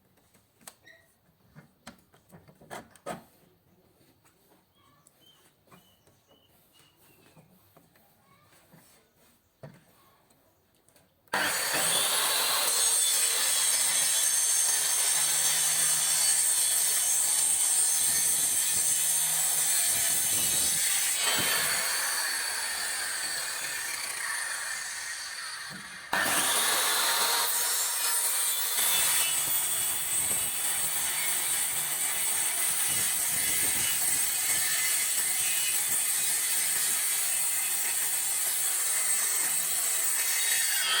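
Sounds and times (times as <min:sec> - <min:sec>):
circular saw cutting wood: 0:11.3 - 0:41.0.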